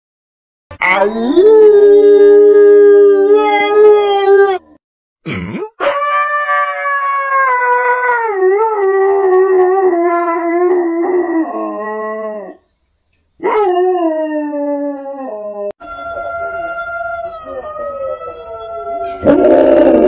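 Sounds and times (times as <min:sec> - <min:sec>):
husky howling: 0:13.4 - 0:20.0.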